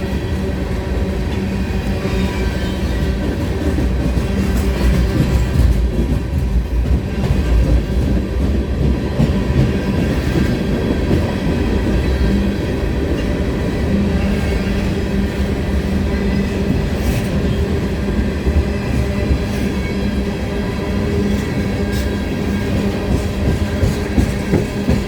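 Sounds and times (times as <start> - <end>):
train rumbling past: 0.0 - 25.0.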